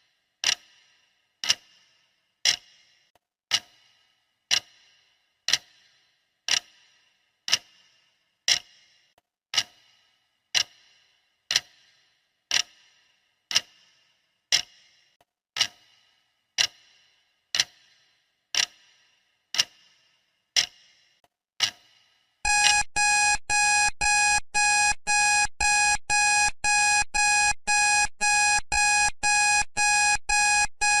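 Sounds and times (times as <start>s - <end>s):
alarm clock pulsing tone: 22.5s - 31.0s
clock ticking: 22.5s - 31.0s.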